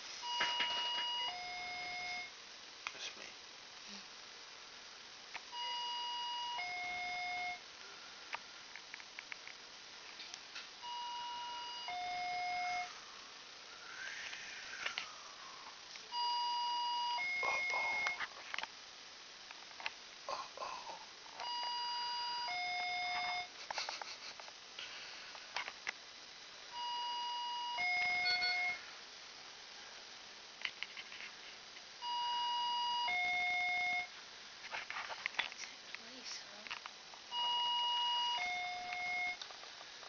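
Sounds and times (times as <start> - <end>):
electronic hi-lo siren: 16.1 - 18.2
small clicks and rustles: 30.6 - 31.9, 34.6 - 37.0.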